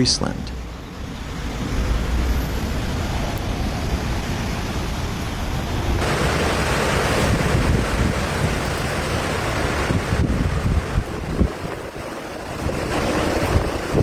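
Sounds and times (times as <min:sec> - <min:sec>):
steady rushing noise: 0:00.0 - 0:14.0
wind buffeting microphone: 0:00.6 - 0:14.0.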